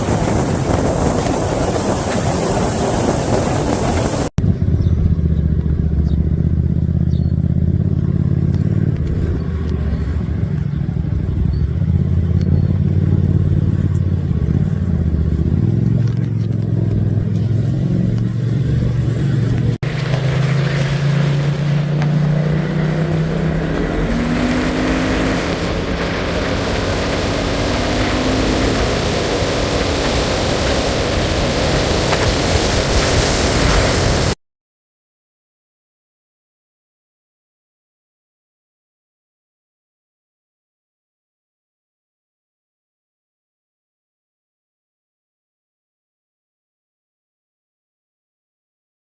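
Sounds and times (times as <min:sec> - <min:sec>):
motorcycle engine running: 0:00.0 - 0:32.4.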